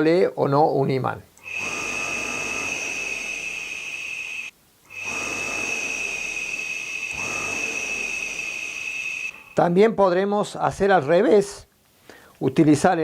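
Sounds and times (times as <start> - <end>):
clothes dryer motor whining: 1.4 - 9.6.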